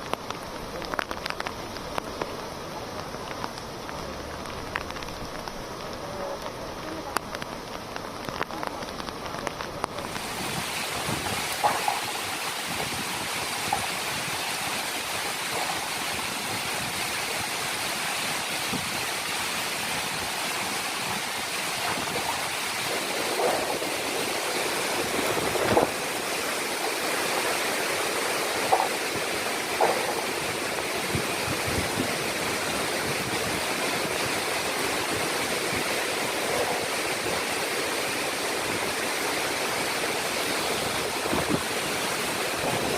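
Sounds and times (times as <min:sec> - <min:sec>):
heavy surf on a beach: 0:00.0 - 0:42.9.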